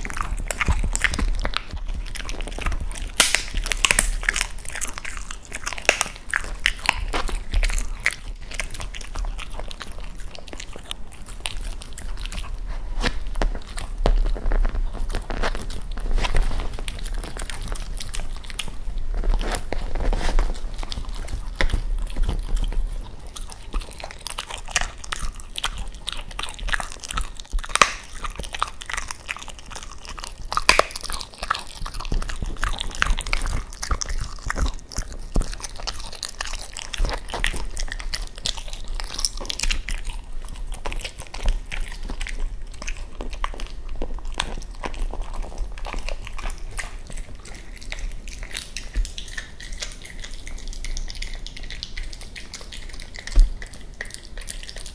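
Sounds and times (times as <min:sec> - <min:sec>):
dog chewing and crunching bones: 0:00.0 - 0:54.9.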